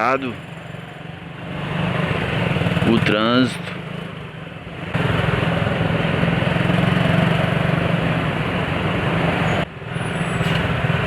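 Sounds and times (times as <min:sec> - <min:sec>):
motorcycle engine running: 0:04.9 - 0:08.0.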